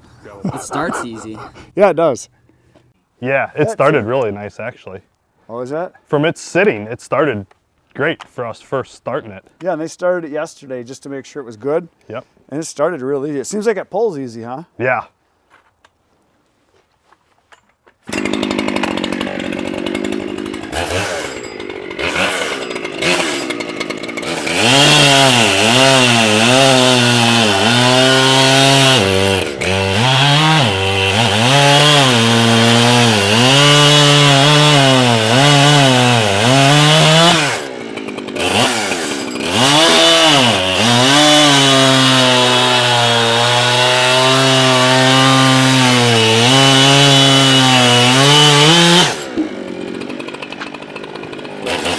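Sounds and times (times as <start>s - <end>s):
chainsaw cutting wood: 0.0s - 1.7s, 18.0s - 51.9s.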